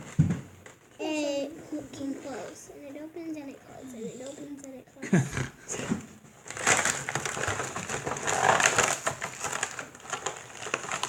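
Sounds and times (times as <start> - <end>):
plastic packaging crinkling: 6.3 - 11.0.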